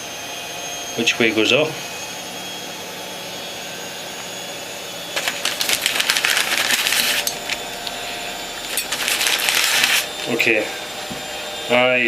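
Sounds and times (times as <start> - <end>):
metal rings crinkling and clicking: 5.2 - 8.0, 8.6 - 10.3.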